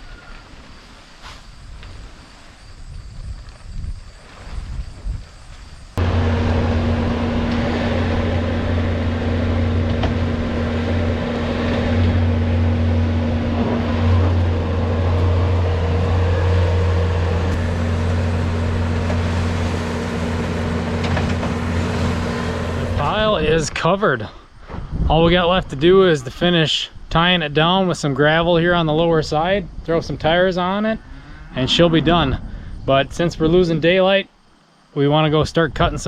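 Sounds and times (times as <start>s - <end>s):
tractor engine running: 6.0s - 23.4s.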